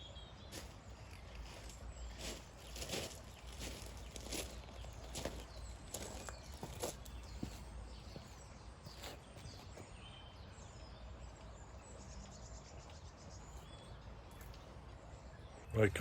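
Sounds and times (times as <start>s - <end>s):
bird trill: 0.0s - 8.3s
high bird chirps: 0.0s - 9.9s
faint outdoor ambience: 0.0s - 16.0s.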